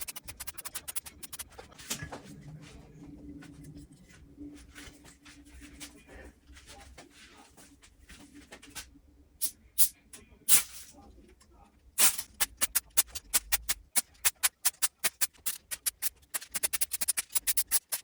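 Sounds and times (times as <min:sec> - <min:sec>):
sharp clicks: 0:00.0 - 0:01.5, 0:12.3 - 0:18.0
tools scratching on mixing console: 0:00.0 - 0:01.8, 0:12.2 - 0:18.0.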